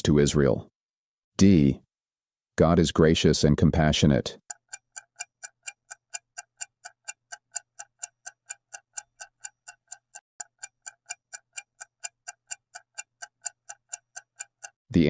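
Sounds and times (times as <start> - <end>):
countdown timer ticking: 4.5 - 15.0.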